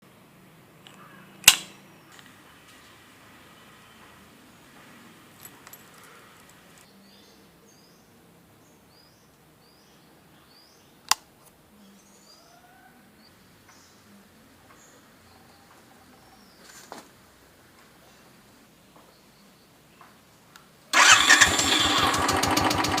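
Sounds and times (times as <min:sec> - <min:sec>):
faint outdoor background noise: 0:00.0 - 0:23.0
sharp click: 0:00.8 - 0:02.3, 0:11.1 - 0:11.3
small bird chirping: 0:03.3 - 0:16.9.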